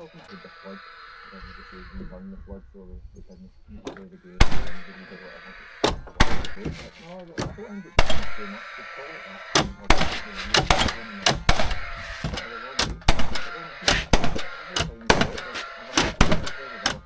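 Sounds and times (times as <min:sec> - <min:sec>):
hammer nailing into timber: 0:09.6 - 0:17.0.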